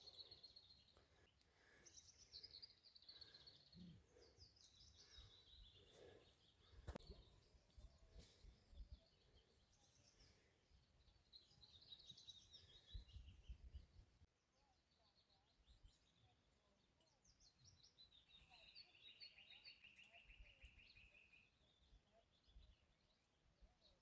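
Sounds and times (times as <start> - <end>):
songbirds chirping and trilling: 0.0 - 24.0.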